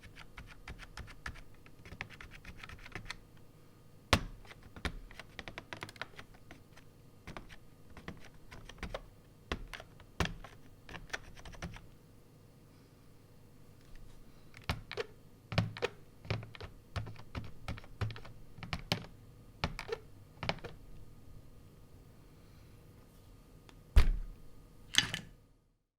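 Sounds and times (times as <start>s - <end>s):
keyboard typing: 0.0s - 3.2s, 4.2s - 11.9s, 14.6s - 20.8s.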